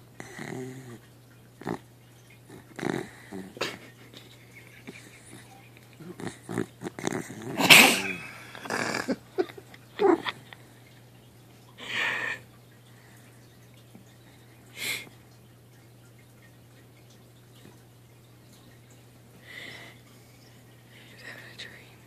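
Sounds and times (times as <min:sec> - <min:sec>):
dog snoring and snorting: 0:00.2 - 0:01.0, 0:01.6 - 0:01.9, 0:02.5 - 0:03.8, 0:04.8 - 0:09.2.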